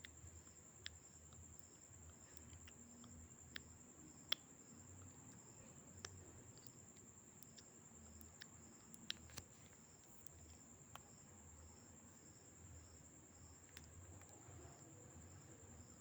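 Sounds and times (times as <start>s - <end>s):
light clicks: 0.0s - 11.2s.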